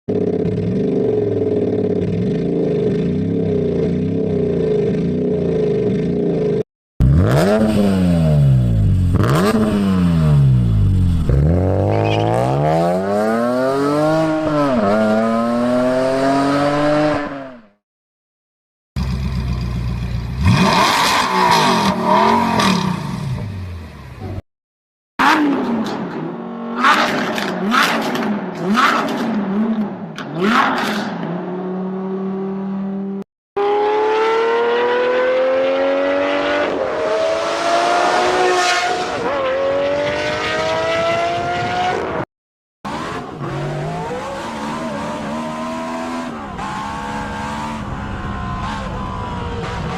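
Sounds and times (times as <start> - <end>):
engine revving hard: 7.0 - 17.6, 20.4 - 23.4, 33.6 - 42.2, 42.9 - 49.9.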